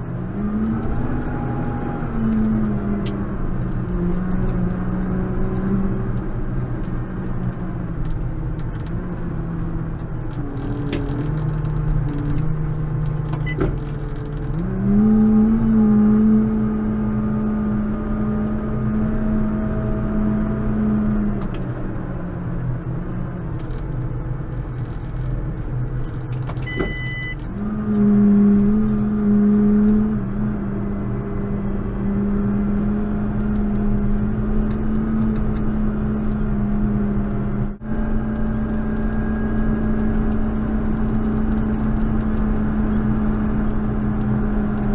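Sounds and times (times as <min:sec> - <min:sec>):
two-tone electronic beep: 0:26.6 - 0:27.4.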